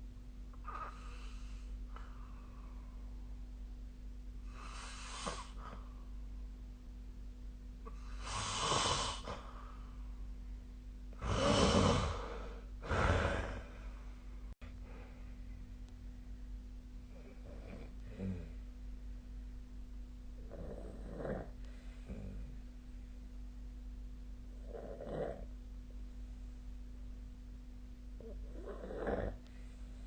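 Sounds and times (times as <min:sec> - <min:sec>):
steady low hum: 0:00.0 - 0:30.0
person snoring: 0:07.9 - 0:09.6, 0:11.2 - 0:14.0, 0:17.1 - 0:18.6, 0:20.4 - 0:22.6, 0:24.6 - 0:25.5, 0:28.2 - 0:29.4.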